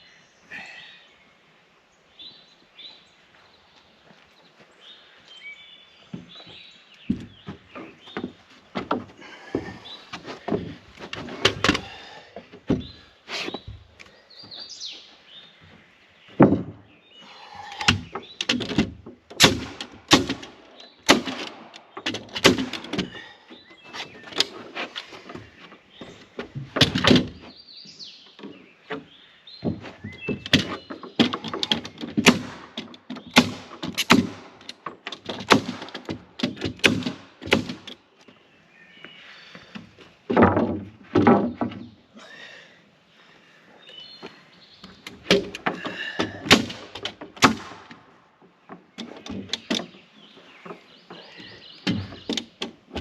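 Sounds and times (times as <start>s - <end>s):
birds chirping: 0.0s - 53.0s
knocks on wooden boards: 6.1s - 13.0s, 16.3s - 16.9s, 17.8s - 23.3s, 25.3s - 27.5s, 28.4s - 38.0s, 39.7s - 42.0s, 44.8s - 50.0s, 50.6s - 53.0s.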